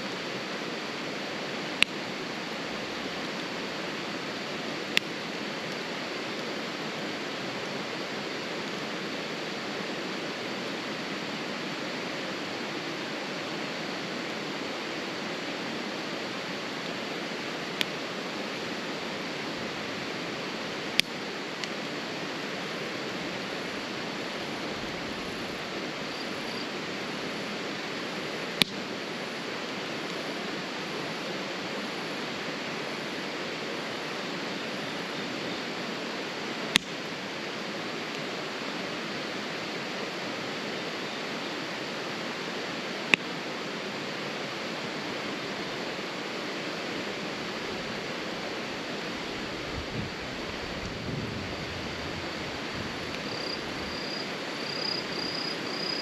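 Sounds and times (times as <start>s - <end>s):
campfire hissing: 0.0s - 56.0s
campfire pops: 36.7s - 37.0s.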